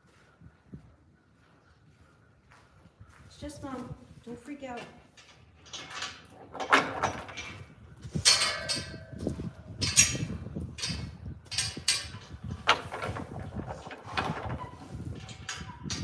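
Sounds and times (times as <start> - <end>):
clattering and rustling of chores: 3.3 - 16.0.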